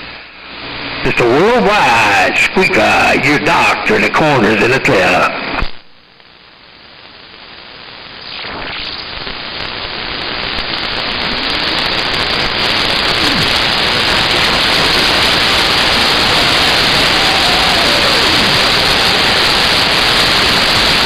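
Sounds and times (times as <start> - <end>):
radio static hiss: 0.0 - 21.0.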